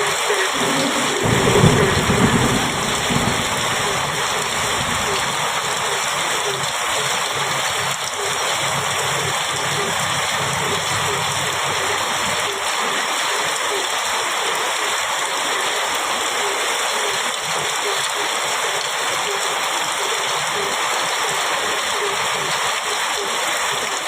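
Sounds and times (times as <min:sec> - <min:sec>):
heavy rain on a metal roof: 0:00.0 - 0:24.0
low roll of thunder: 0:00.5 - 0:06.3.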